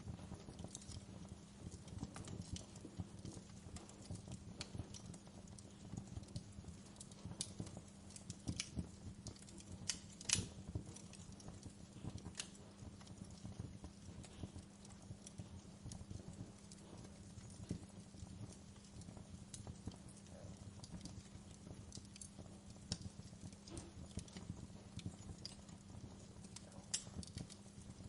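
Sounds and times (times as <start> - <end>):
steady low hum: 0.0 - 28.0
wood fire crackling: 0.0 - 28.0.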